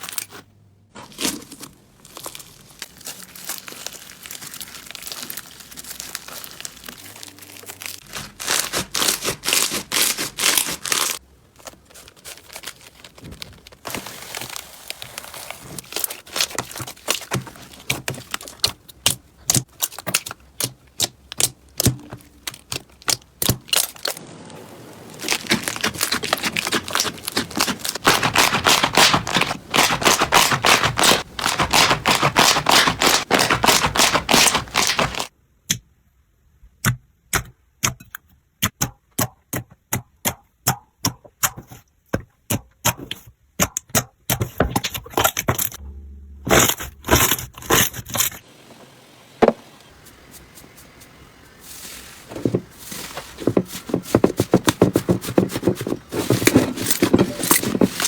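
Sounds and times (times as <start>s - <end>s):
slime crackling and popping: 2.1s - 11.2s, 25.0s - 35.3s.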